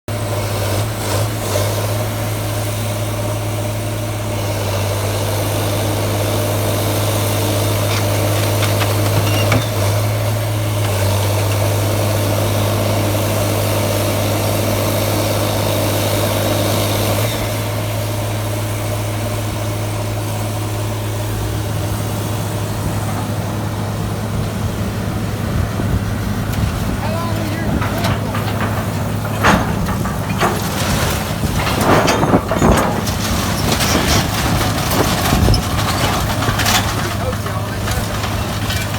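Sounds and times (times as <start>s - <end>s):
machine engine humming: 20.8s - 38.9s.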